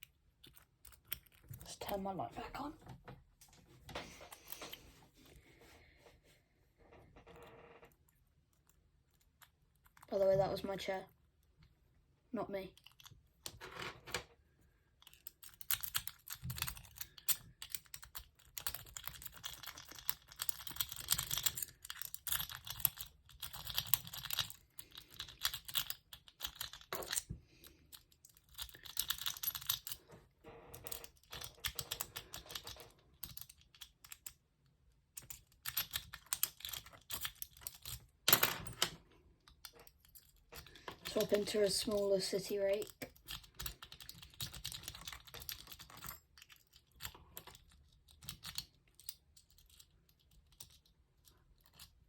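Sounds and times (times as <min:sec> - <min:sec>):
lock pick clicking and scraping: 0:00.0 - 0:01.7, 0:14.9 - 0:30.0, 0:30.7 - 0:34.4, 0:35.1 - 0:41.1, 0:43.1 - 0:52.0.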